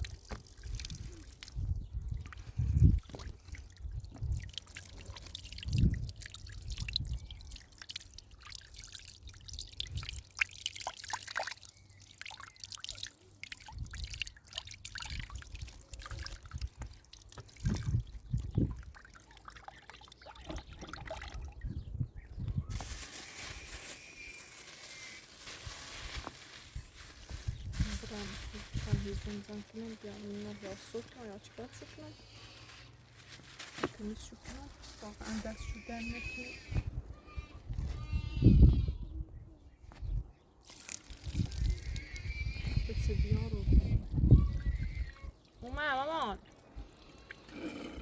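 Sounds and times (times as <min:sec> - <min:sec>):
water trickling and dripping: 0:00.0 - 0:21.8, 0:44.1 - 0:47.5.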